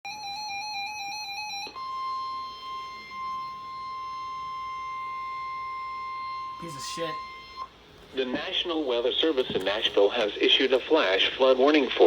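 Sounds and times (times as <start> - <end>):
steady high-pitched alarm tone: 0.1 - 9.3.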